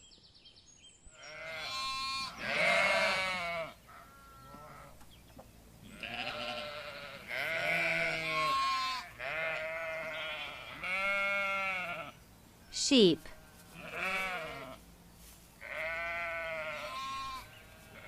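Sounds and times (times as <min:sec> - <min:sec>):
sheep bleating: 0:01.2 - 0:05.0, 0:05.8 - 0:12.2, 0:13.7 - 0:14.8, 0:15.6 - 0:18.0.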